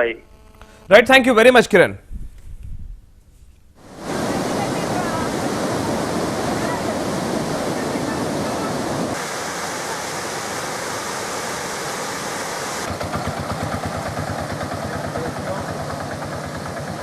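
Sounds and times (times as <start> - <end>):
rushing floodwater: 3.8 - 17.0
engine throbbing: 12.8 - 17.0.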